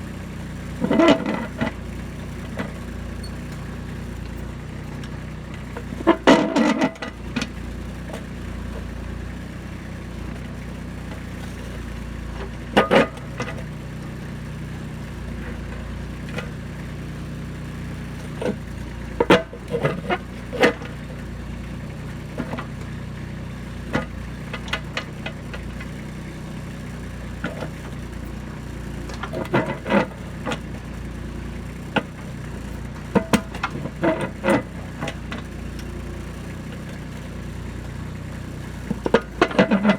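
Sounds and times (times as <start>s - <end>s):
tractor diesel engine running: 0.0s - 39.9s
bucket clanking on rock: 38.9s - 39.9s.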